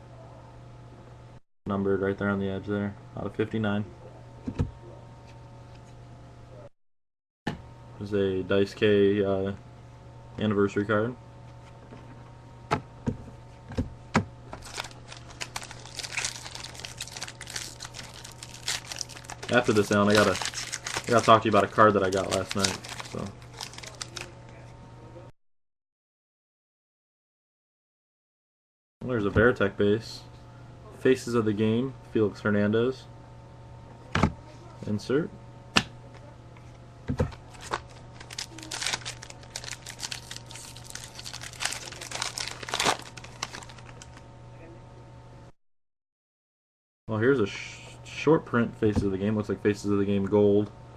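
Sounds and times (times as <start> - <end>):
cards being handled: 14.6 - 24.3, 37.2 - 44.2
foil wrapper crinkling: 14.6 - 24.4, 37.4 - 44.2.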